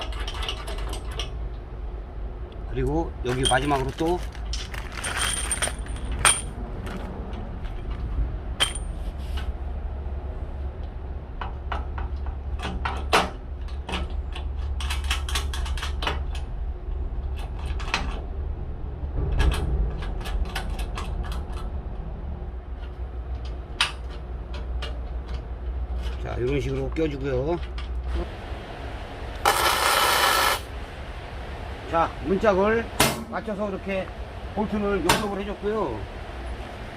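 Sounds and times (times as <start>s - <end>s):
metal clinks and knocks: 3.3s - 9.0s
steady low hum: 27.0s - 36.9s.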